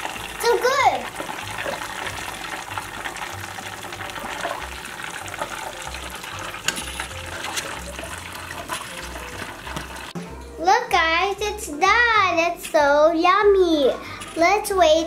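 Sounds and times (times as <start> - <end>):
hot oil sizzling and crackling: 0.0 - 10.2.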